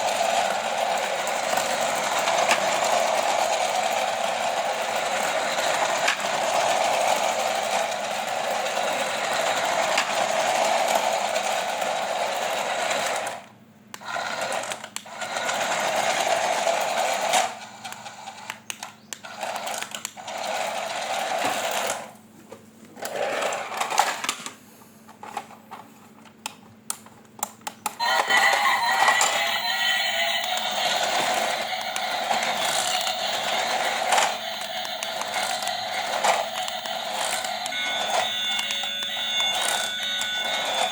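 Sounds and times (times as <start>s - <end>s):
small electric motor whirring: 28.0s - 40.9s.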